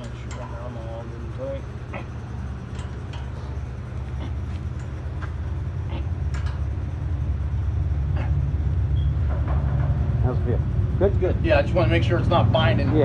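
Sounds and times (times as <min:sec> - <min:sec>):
light mechanical clicks and ticks: 0:00.0 - 0:00.6
low mechanical hum: 0:00.0 - 0:13.0.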